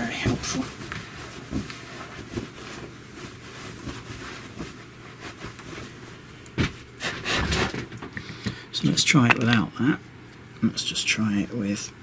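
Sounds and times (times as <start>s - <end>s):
soft handling rustles: 0.0s - 7.0s.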